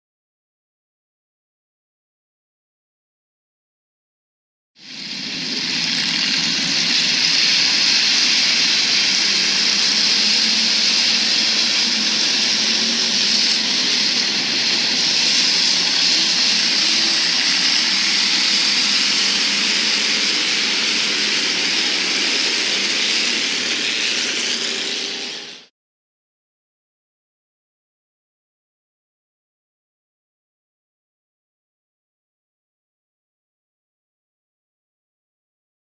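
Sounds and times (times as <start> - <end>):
race car engines droning: 4.9 - 25.7.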